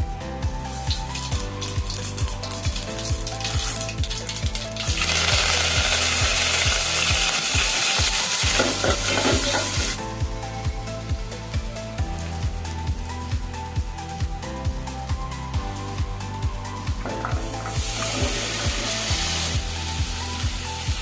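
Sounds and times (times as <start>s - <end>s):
background music with steady beat: 0.0s - 21.0s
food sizzling in hot oil: 0.7s - 10.0s, 17.1s - 21.0s.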